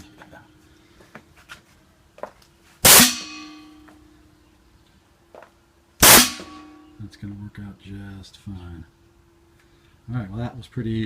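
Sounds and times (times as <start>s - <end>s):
faint steady hum: 0.0s - 11.0s
air cannon blast: 2.8s - 3.5s, 6.0s - 6.7s.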